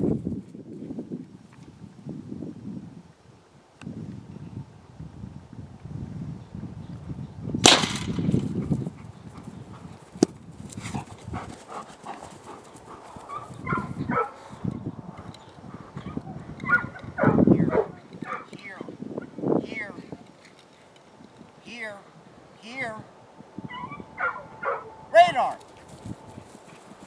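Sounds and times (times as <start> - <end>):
gunshot: 7.6 - 8.5.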